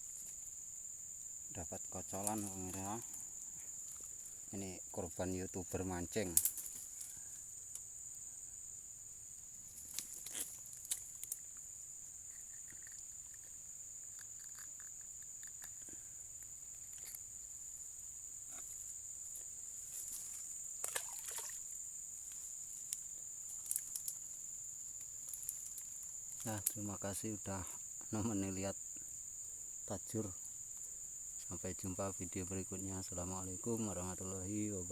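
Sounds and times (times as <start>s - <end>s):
insects droning: 0.0s - 34.9s
faint clicks and rustles: 9.7s - 17.3s, 22.2s - 24.3s, 25.0s - 26.8s.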